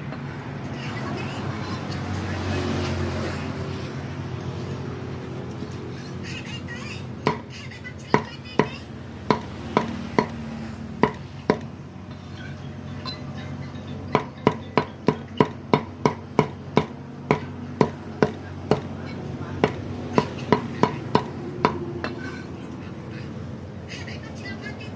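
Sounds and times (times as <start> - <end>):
knife chopping on cutting board: 9.3 - 10.4.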